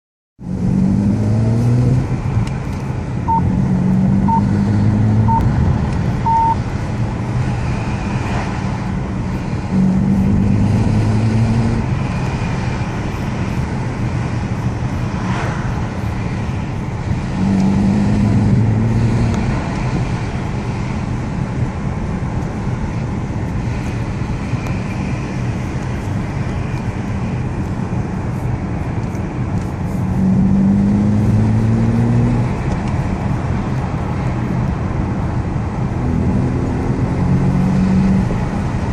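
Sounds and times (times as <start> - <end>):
short beeps: 3.3 - 3.5, 4.2 - 4.5, 5.3 - 5.5, 6.2 - 6.6.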